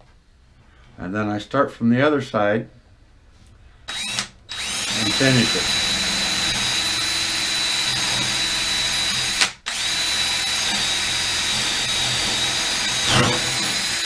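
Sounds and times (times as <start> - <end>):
electric drill whining: 3.9 - 14.0.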